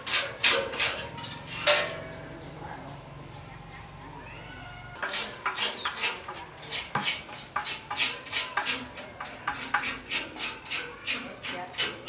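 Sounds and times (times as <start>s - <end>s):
hand scraping on metal: 5.0s - 12.0s.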